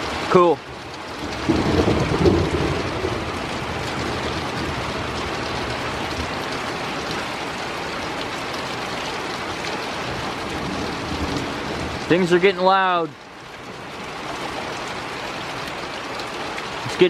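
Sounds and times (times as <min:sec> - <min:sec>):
heavy rain: 0:00.0 - 0:17.0
thunder rumble: 0:01.2 - 0:07.3, 0:10.0 - 0:12.2.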